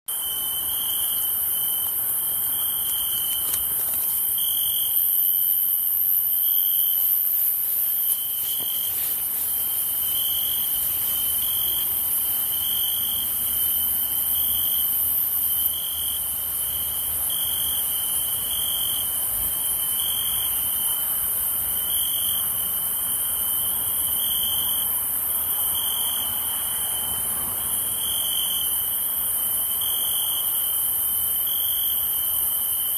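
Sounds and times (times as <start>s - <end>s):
high-pitched insect drone: 0.1s - 16.4s
cricket chirping: 0.1s - 32.9s.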